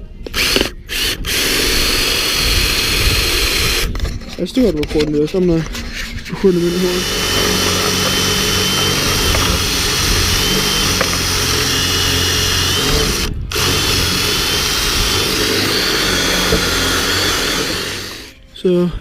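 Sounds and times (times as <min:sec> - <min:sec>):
power drill boring: 0:00.2 - 0:04.0, 0:06.5 - 0:18.4.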